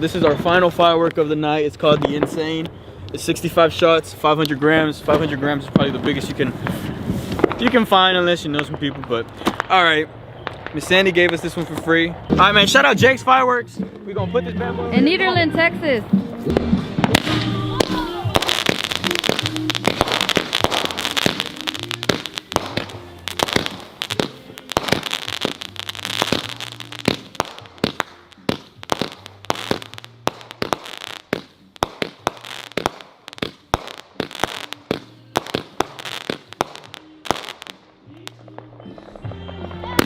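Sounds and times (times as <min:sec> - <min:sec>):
firework shots and crackle: 0:04.4 - 0:13.0, 0:16.5 - 0:38.4
background music: 0:12.0 - 0:40.0.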